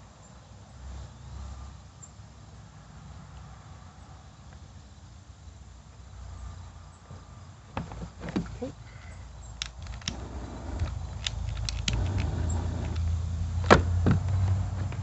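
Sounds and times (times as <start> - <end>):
torch lighter clicking: 9.5 - 13.2
torch flame rushing: 9.6 - 15.0.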